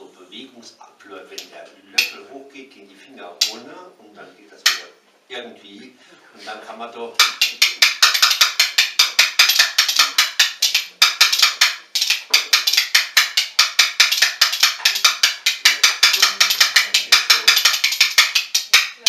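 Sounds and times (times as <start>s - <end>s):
spoons clacking rhythm: 1.4s - 2.2s, 3.4s - 3.7s, 4.6s - 5.0s, 7.2s - 19.0s.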